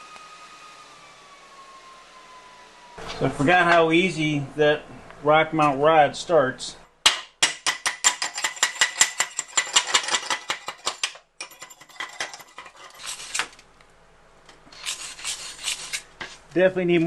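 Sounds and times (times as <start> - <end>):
chipping hammer tapping metal: 7.0 - 11.6
scraping over metal: 8.0 - 13.6.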